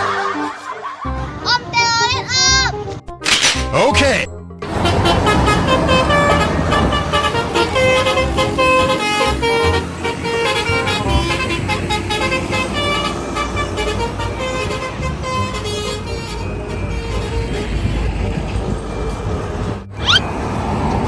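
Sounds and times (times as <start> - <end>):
multi-tone bus horn tune: 4.6 - 21.0.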